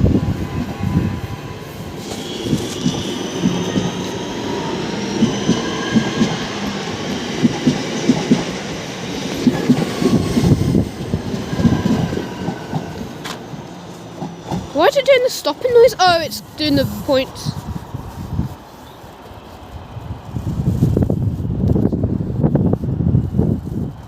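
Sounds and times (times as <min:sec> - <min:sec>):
train wheels clacking: 0:01.8 - 0:16.8.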